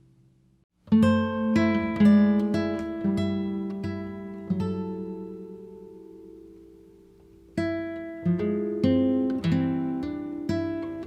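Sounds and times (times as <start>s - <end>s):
acoustic guitar music: 0.7s - 11.0s.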